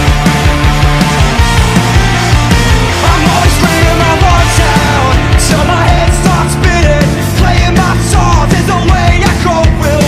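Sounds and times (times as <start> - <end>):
loud punk rock music: 0.0 - 10.0
person singing: 2.9 - 10.0.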